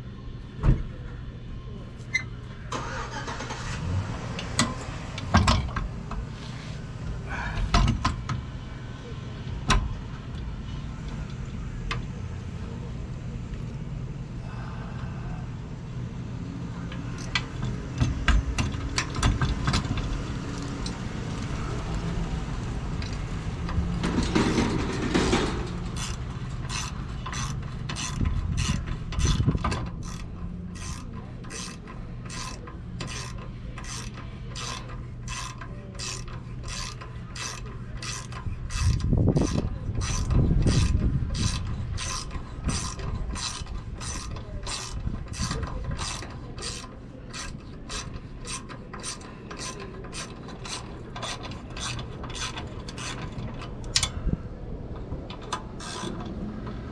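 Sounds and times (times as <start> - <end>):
ratchet wrench clicking: 17.0 - 21.0, 23.7 - 54.1, 55.6 - 56.3.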